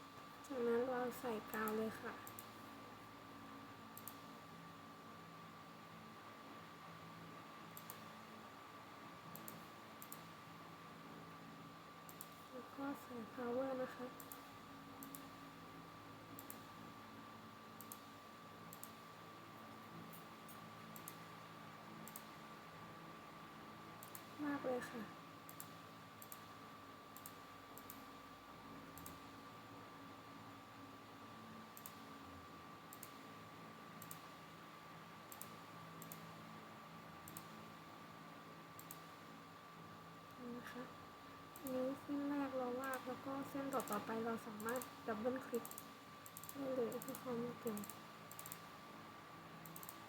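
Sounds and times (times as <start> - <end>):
faint high hum: 0.0 - 50.0
computer mouse clicks: 1.5 - 2.6, 3.9 - 4.3, 7.7 - 8.1, 9.3 - 10.4, 12.0 - 12.5, 14.2 - 15.4, 16.4 - 16.8, 17.8 - 19.0, 20.1 - 21.3, 22.0 - 22.4, 24.0 - 24.4, 25.5 - 26.6, 27.2 - 28.1, 28.9 - 29.3, 31.8 - 32.1, 32.9 - 33.2, 34.0 - 34.4, 35.3 - 36.4, 37.2 - 37.7, 38.8 - 39.1, 41.5 - 41.8, 42.8 - 48.7, 49.6 - 50.0.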